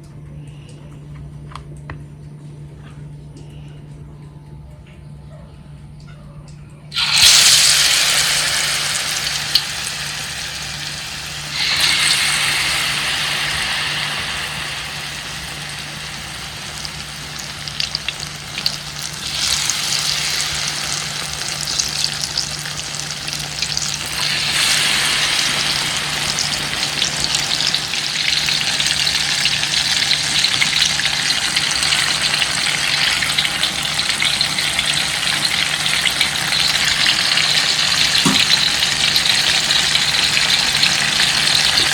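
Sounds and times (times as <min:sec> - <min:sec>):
faint low hum: 0:00.0 - 0:07.0
food sizzling in hot oil: 0:06.9 - 0:41.9.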